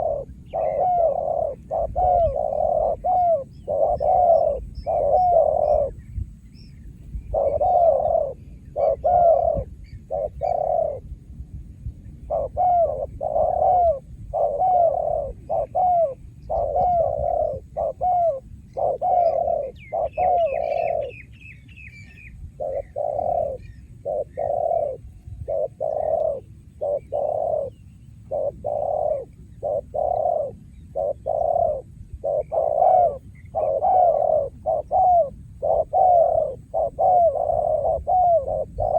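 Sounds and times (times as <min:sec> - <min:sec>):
dove cooing: 0:00.0 - 0:06.4, 0:07.1 - 0:11.1, 0:12.2 - 0:38.9
small bird chirping: 0:12.3 - 0:38.9.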